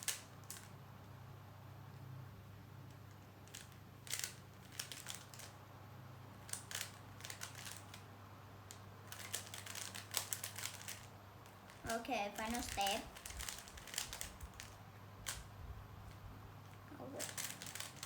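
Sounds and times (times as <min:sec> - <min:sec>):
plastic puzzle cube clicks: 0:00.0 - 0:00.7, 0:03.5 - 0:05.5, 0:06.4 - 0:08.0, 0:08.7 - 0:11.1, 0:12.4 - 0:15.5, 0:17.2 - 0:18.0
steady low hum: 0:00.0 - 0:18.0.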